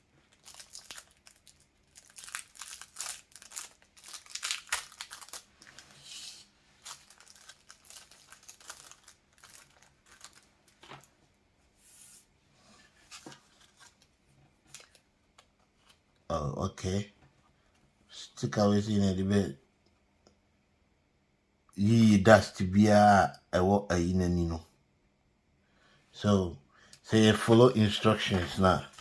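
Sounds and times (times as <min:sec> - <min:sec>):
packaging crinkling and tearing: 0:00.0 - 0:06.0, 0:06.8 - 0:11.1, 0:14.7 - 0:15.0, 0:27.4 - 0:29.0.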